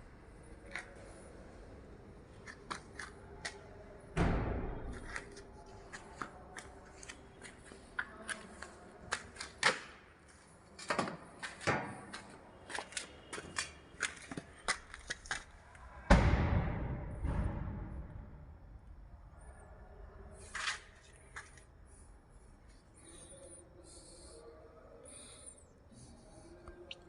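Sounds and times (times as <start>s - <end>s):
loud thump: 4.2s - 5.0s, 16.1s - 18.3s.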